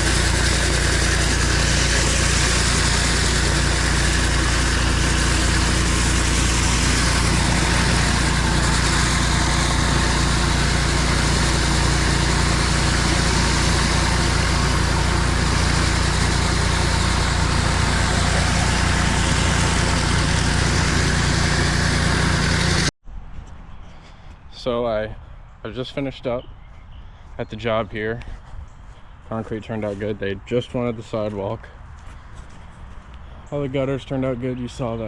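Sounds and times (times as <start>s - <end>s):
pressure washer engine drone: 0.0s - 22.9s.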